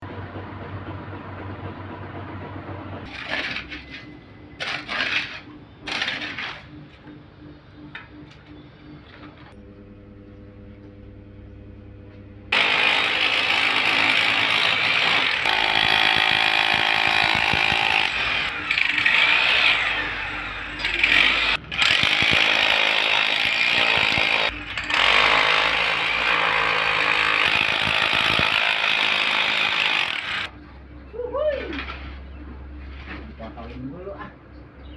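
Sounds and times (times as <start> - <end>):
low steady hum: 6.6 - 12.6
jackhammer running: 12.5 - 30.5.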